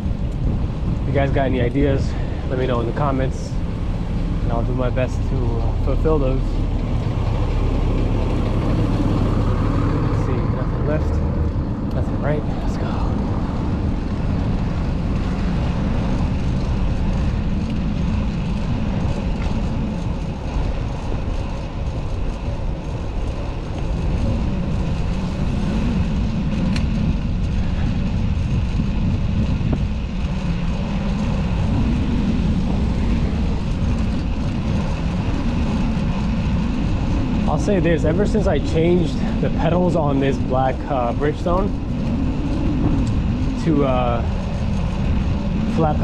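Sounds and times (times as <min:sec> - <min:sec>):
city traffic: 0:00.0 - 0:46.0
wind buffeting microphone: 0:00.0 - 0:46.0.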